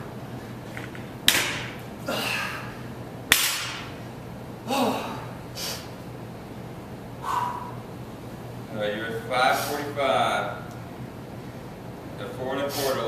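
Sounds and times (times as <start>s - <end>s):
person grunting: 4.7s - 5.2s
heavy gasping: 7.2s - 7.8s.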